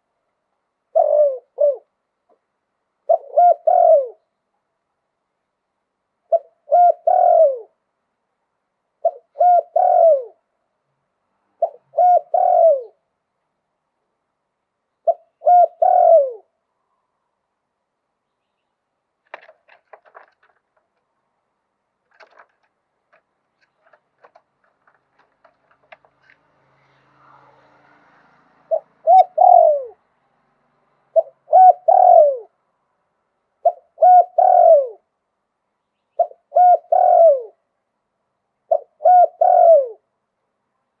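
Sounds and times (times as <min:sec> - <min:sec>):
dove cooing: 0:00.9 - 0:01.9, 0:03.0 - 0:04.2, 0:06.3 - 0:07.8, 0:09.0 - 0:10.4, 0:11.6 - 0:13.0, 0:15.0 - 0:16.5, 0:22.1 - 0:22.6, 0:23.6 - 0:26.4, 0:28.7 - 0:30.0, 0:31.1 - 0:32.5, 0:33.6 - 0:35.1, 0:36.2 - 0:37.6, 0:38.7 - 0:40.1
faint scattered clicks: 0:22.0 - 0:26.5.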